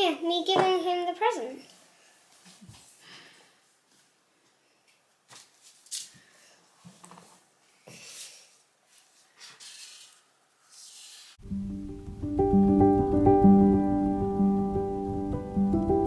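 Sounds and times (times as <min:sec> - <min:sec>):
piano music: 0:11.4 - 0:16.0.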